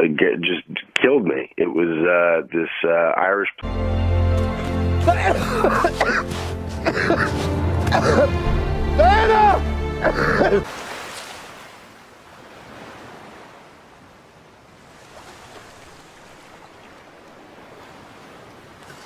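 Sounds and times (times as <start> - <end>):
music with voice: 3.6 - 10.6.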